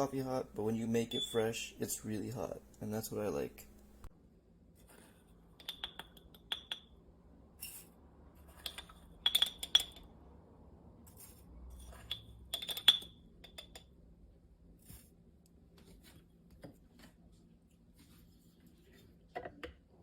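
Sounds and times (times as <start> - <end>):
glassware clinking: 0.8 - 1.5.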